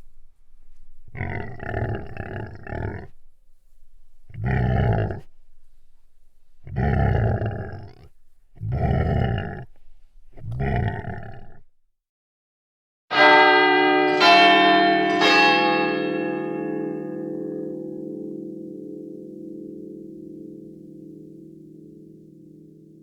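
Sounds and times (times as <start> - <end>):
animal roaring: 1.1 - 3.2, 4.3 - 5.3, 6.6 - 9.8, 10.4 - 11.7.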